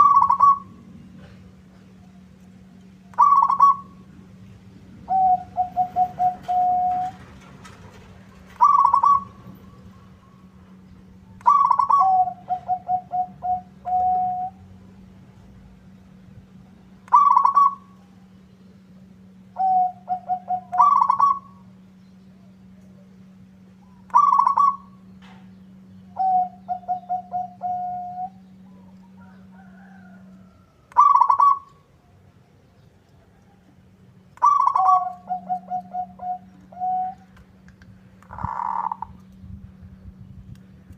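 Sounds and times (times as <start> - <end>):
dove cooing: 0.0 - 2.3, 3.0 - 4.2, 5.0 - 10.6, 11.2 - 14.8, 17.1 - 18.2, 19.5 - 21.8, 23.8 - 25.4, 26.0 - 32.0, 34.4 - 37.4, 38.2 - 39.3
steady low hum: 0.0 - 40.9.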